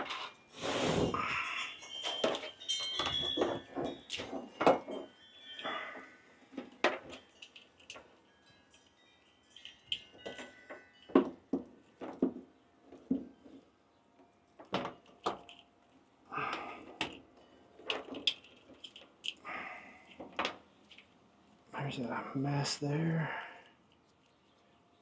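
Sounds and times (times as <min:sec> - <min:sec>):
tools and parts knocking: 0:01.9 - 0:08.2, 0:09.9 - 0:13.6, 0:14.6 - 0:15.6.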